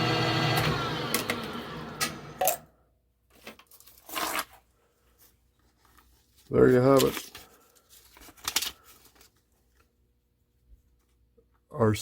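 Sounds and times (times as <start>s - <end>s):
lathe motor running down: 0.0s - 2.4s.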